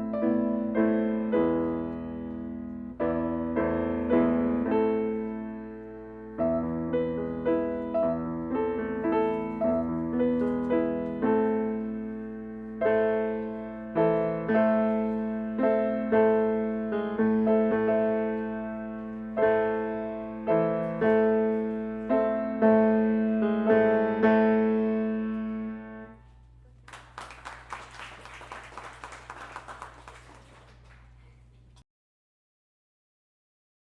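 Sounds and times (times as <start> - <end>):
slow piano melody: 0.0 - 26.4.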